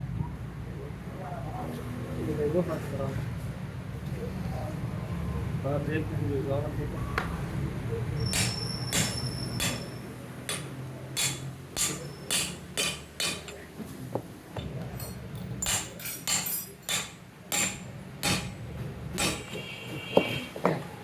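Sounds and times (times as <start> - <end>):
hammer striking metal: 8.2 - 13.7, 14.6 - 19.7.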